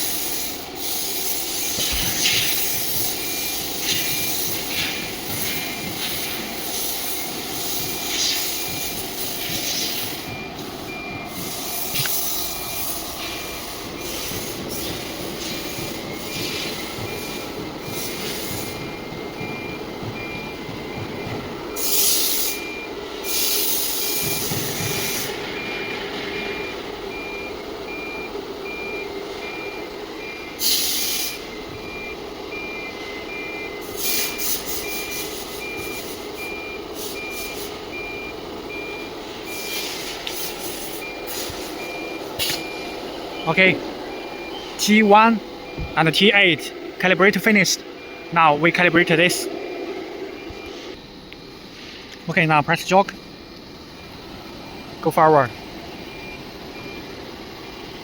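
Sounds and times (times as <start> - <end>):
compressed air hissing: 0.0 - 18.9, 21.8 - 25.5, 30.6 - 31.5, 33.8 - 37.8, 39.2 - 43.1, 50.2 - 52.2
machine hum: 0.0 - 30.6, 34.7 - 58.0
high beep: 1.6 - 49.5.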